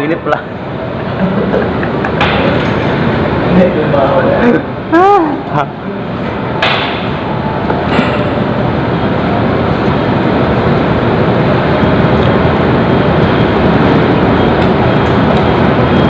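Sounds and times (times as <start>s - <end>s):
loud rushing noise with rumble: 5.8s - 16.0s.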